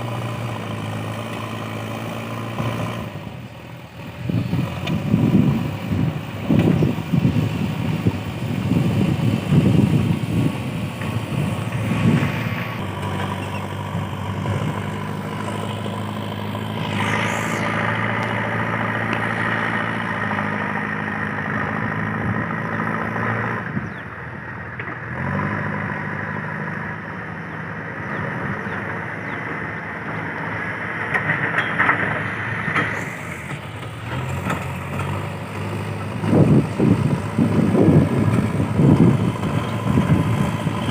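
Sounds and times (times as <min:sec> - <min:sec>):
diesel engine running: 0:00.0 - 0:40.9
high whine: 0:11.4 - 0:20.2.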